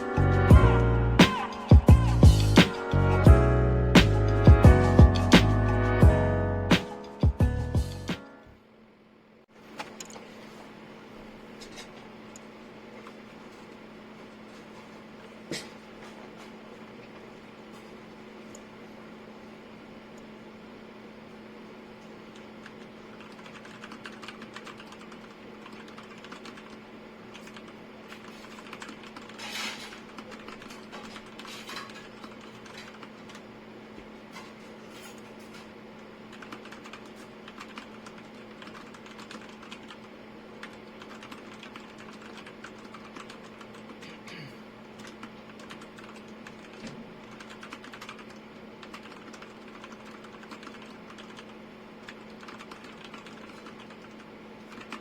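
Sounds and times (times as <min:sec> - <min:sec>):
steady low hum: 0:00.0 - 0:55.0
mechanical keyboard typing: 0:22.4 - 0:33.4, 0:36.3 - 0:44.0, 0:45.0 - 0:55.0.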